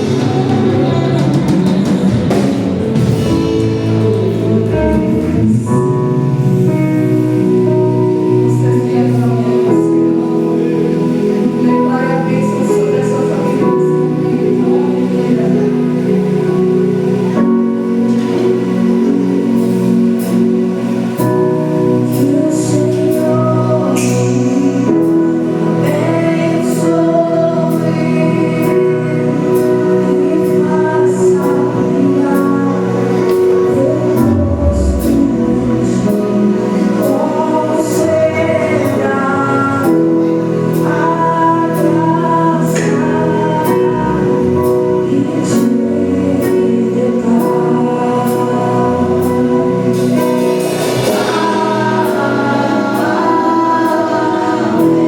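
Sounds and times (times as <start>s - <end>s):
instrumental backing with beat: 0.0s - 12.2s, 28.6s - 55.0s
choir singing gospel: 0.0s - 55.0s.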